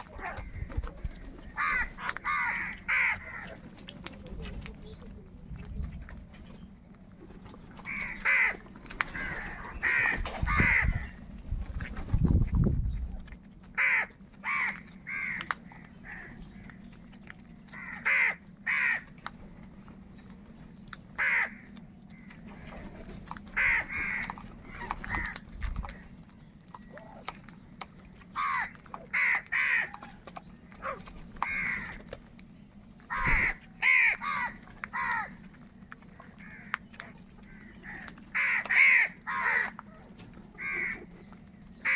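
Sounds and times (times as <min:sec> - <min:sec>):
crows cawing: 0:01.5 - 0:03.6, 0:07.9 - 0:11.2, 0:13.8 - 0:16.4, 0:17.8 - 0:19.1, 0:21.2 - 0:22.3, 0:23.6 - 0:25.4, 0:28.4 - 0:30.0, 0:31.4 - 0:32.0, 0:33.1 - 0:35.4, 0:36.4 - 0:36.8, 0:37.5 - 0:39.8, 0:40.6 - 0:41.0.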